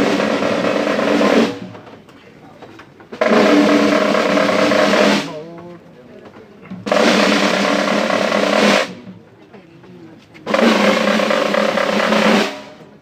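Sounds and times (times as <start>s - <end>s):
snare drum rolls: 0.0s - 1.9s, 3.1s - 5.5s, 6.7s - 9.2s, 10.4s - 12.9s.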